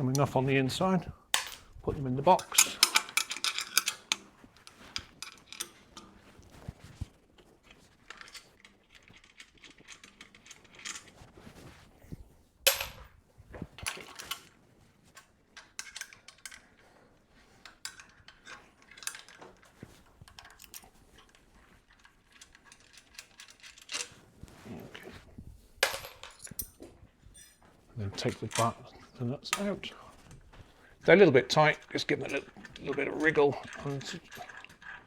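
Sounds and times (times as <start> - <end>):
spanners clinking on metal: 1.3 - 6.2, 25.8 - 28.8, 31.4 - 35.0.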